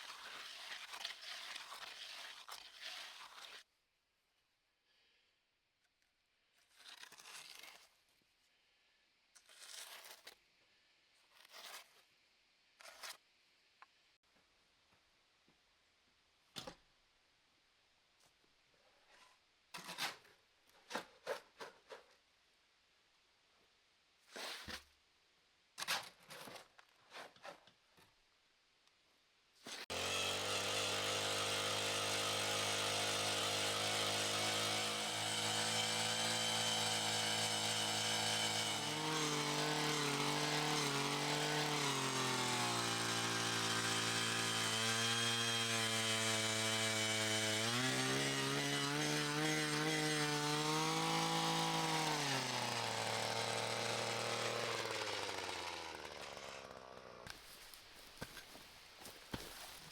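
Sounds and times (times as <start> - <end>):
small engine revving: 29.9 - 57.3.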